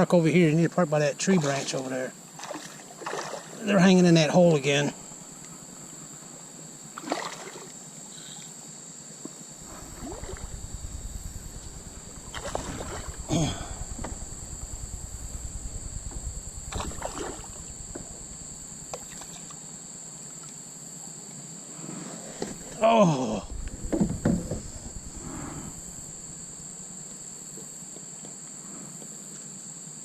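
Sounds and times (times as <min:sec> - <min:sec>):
insect drone: 0:02.1 - 0:20.1, 0:22.3 - 0:28.0
low pulsing rumble: 0:09.6 - 0:19.4, 0:22.4 - 0:27.5.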